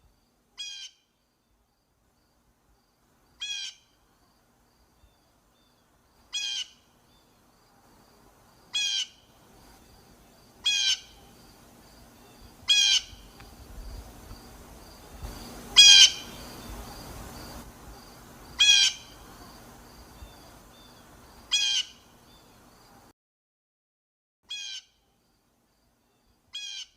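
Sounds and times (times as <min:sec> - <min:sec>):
blue jay calling: 0:00.6 - 0:01.1, 0:03.4 - 0:04.0, 0:06.3 - 0:07.3, 0:08.7 - 0:09.4, 0:10.6 - 0:11.4, 0:12.4 - 0:13.4, 0:15.7 - 0:16.8, 0:18.6 - 0:19.2, 0:20.8 - 0:22.1, 0:24.5 - 0:25.0, 0:26.5 - 0:26.9.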